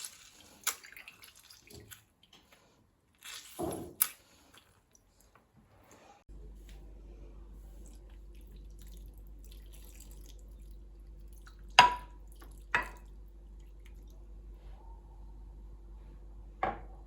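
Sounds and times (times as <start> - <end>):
faint steady hum: 4.1 - 17.0.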